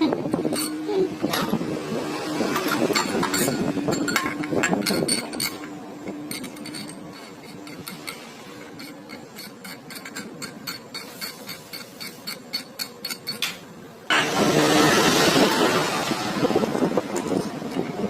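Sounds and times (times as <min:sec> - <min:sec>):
metal tools clinking: 0:00.4 - 0:01.6, 0:02.4 - 0:13.7.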